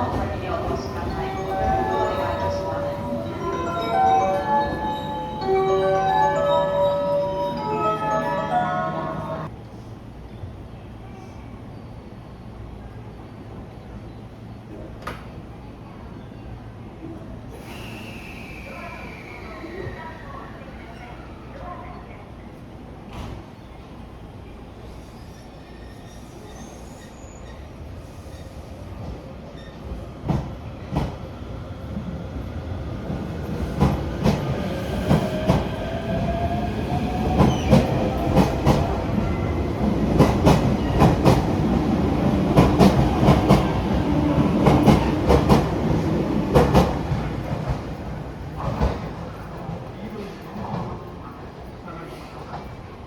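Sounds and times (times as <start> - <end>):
electric train pulling out: 0.0 - 9.5.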